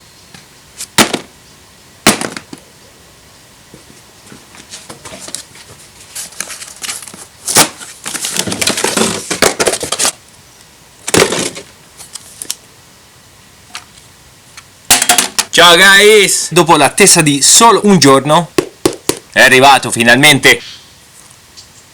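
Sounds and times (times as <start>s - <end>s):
crackling rustling handling noise: 3.7s - 12.7s
sharp knocks and clicks: 18.6s - 19.3s.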